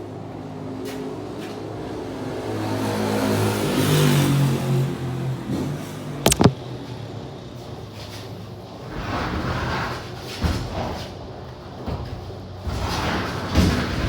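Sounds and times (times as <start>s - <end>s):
sharp knocks: 6.3s - 6.6s.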